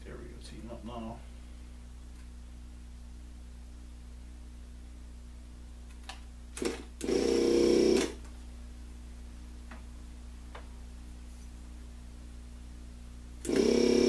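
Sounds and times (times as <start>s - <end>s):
desoldering pump buzzing: 6.6s - 8.2s, 13.4s - 14.0s.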